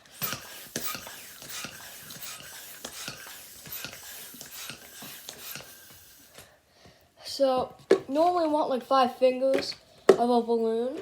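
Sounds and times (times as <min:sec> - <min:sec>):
hand pump rasping strokes: 0:00.0 - 0:06.4.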